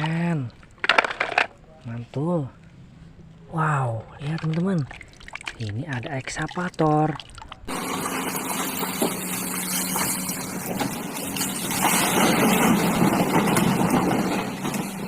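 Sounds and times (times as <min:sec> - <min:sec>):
small motor humming: 0:07.7 - 0:12.4
spraying water hiss: 0:07.7 - 0:13.6.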